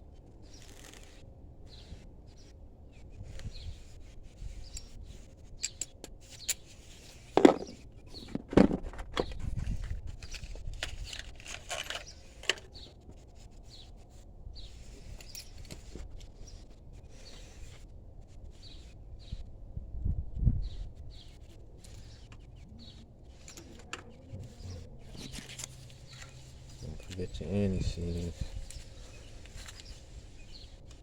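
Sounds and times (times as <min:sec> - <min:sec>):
hand tools clicking and clinking: 0:10.2 - 0:12.7.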